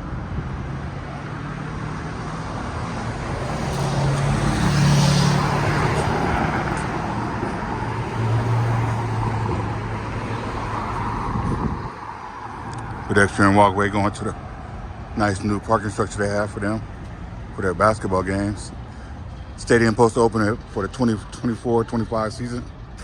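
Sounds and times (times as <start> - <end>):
passing cars rushing: 0.0 - 23.0
low engine hum: 2.3 - 15.2.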